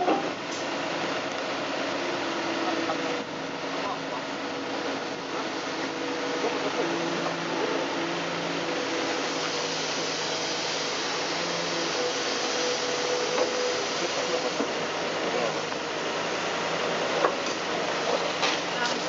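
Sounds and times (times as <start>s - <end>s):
diesel engine humming: 0.0s - 19.0s.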